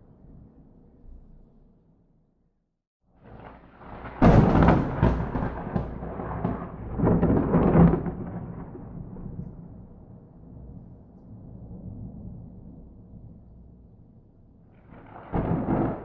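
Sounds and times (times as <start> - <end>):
thunderclap: 3.2 - 13.5, 14.8 - 16.0.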